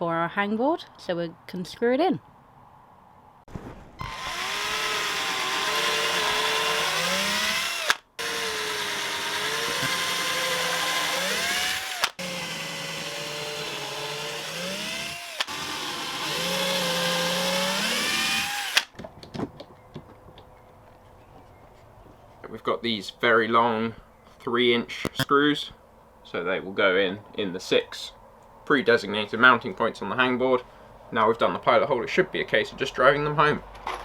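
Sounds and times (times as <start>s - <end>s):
power drill boring into wood: 4.0s - 18.9s.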